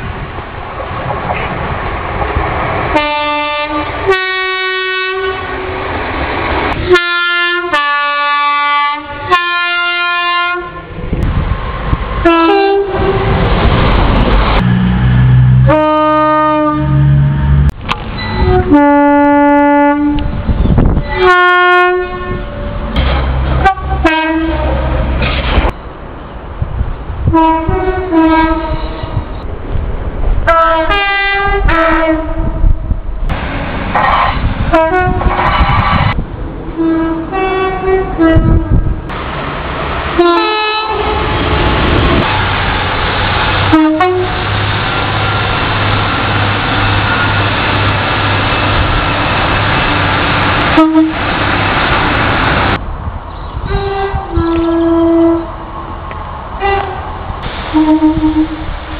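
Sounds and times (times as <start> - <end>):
low rumble of trains running: 0.0 - 58.9
two-tone train horn blasts: 2.9 - 5.7, 6.8 - 10.9, 12.2 - 13.4, 14.6 - 17.7, 18.3 - 23.0, 23.6 - 25.1, 27.3 - 29.2, 30.5 - 32.7, 34.0 - 35.3, 36.8 - 38.9, 40.2 - 41.4, 43.6 - 44.4, 50.7 - 51.2, 53.6 - 55.6, 56.6 - 57.0, 57.7 - 58.7.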